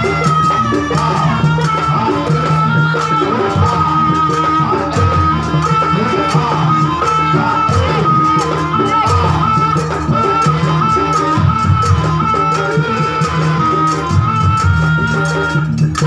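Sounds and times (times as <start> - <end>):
folk dance music: 0.0 - 16.0
high held melody line: 0.0 - 16.0
steady percussion: 0.0 - 16.0.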